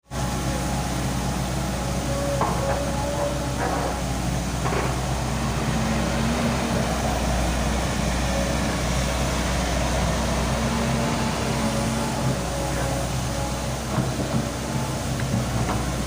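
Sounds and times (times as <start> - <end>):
excavator diesel engine running: 0.0 - 16.0.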